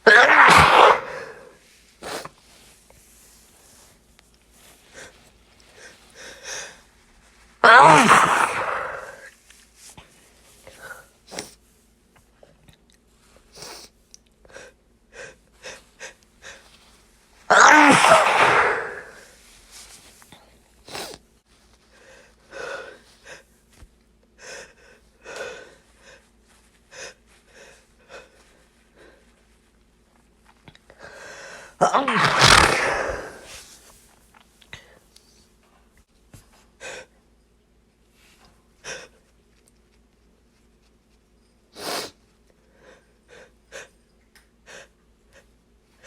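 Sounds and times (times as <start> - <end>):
person sneezing: 0.0 - 2.3, 7.6 - 9.3, 17.5 - 19.3, 31.7 - 33.7
sniffs and catching in-breaths: 0.1 - 2.6, 7.7 - 9.3, 17.5 - 20.2, 31.1 - 33.9.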